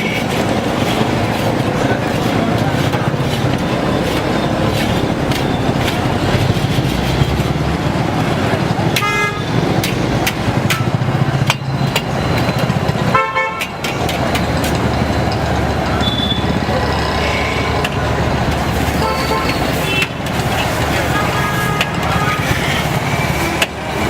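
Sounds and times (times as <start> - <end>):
street traffic noise: 0.0 - 24.0
vehicle horns honking: 9.0 - 9.6, 13.1 - 13.8, 16.0 - 18.0, 18.8 - 22.8.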